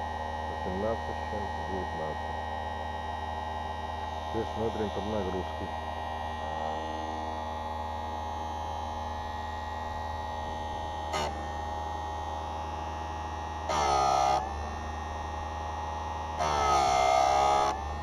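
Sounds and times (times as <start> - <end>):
chain sharpening grinder humming: 4.3 - 18.0
grinding wheel whine on chain: 4.3 - 18.0.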